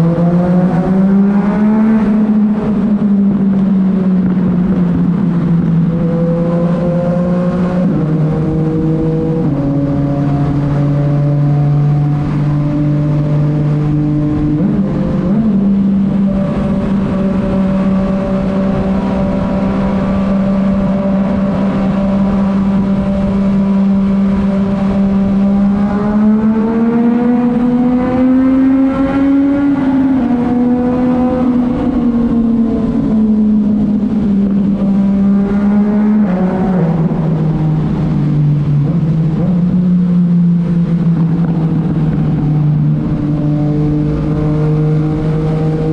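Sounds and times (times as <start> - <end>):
motorcycle engine cruising: 0.0 - 45.9.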